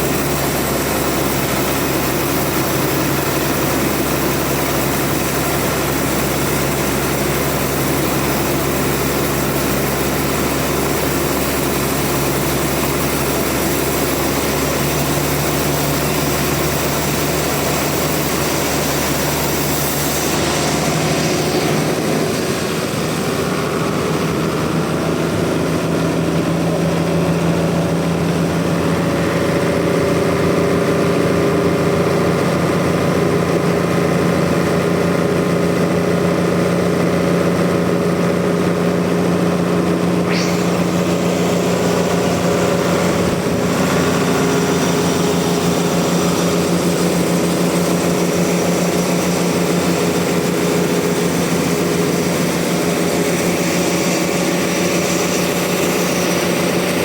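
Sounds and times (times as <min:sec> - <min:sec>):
sawmill engine running: 0:00.0 - 0:57.0
brief high squeak: 0:40.2 - 0:43.5.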